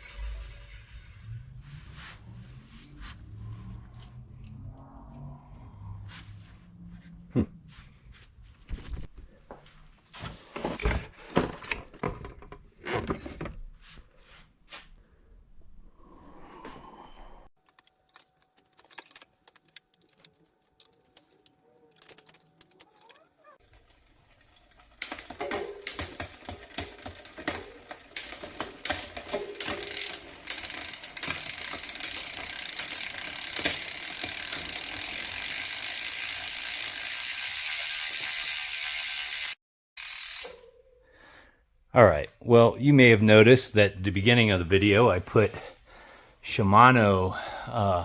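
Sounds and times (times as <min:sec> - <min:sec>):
bike freewheel ratcheting: 0:22.0 - 0:40.6
scattered clicks and knocks: 0:25.0 - 0:34.8.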